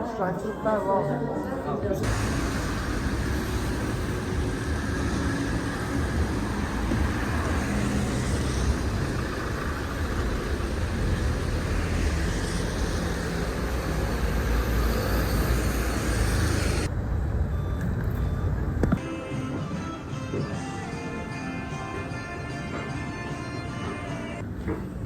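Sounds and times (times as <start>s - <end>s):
low rumble of moving vehicles: 2.0s - 19.0s.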